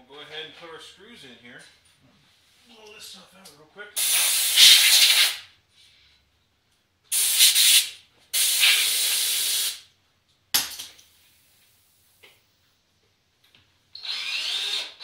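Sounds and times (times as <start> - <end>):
compressed air hissing bursts: 4.0 - 5.4, 7.1 - 9.8.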